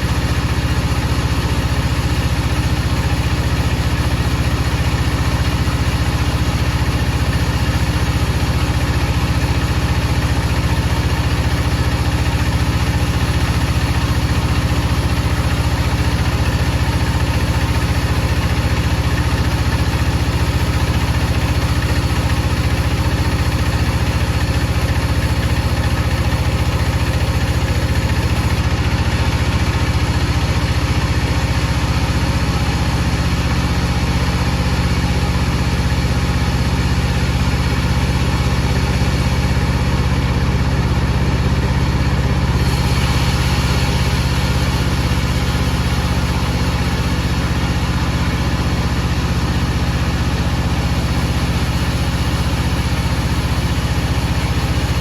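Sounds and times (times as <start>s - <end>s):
saw machinery humming: 42.5s - 47.1s.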